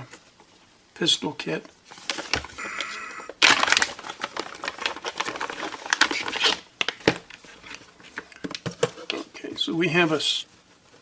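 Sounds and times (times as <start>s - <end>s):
packaging crinkling: 1.9s - 9.2s.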